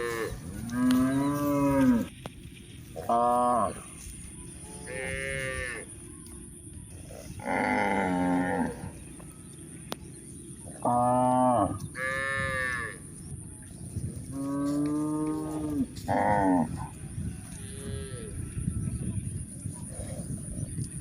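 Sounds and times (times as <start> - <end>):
cattle mooing: 0.0 - 2.1, 7.4 - 8.9, 14.4 - 16.8.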